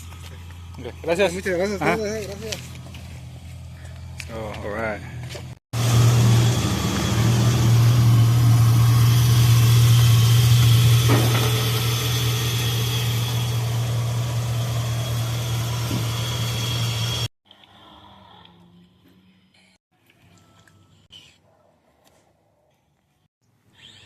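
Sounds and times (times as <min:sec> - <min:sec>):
vehicle engine droning: 0:00.0 - 0:17.3.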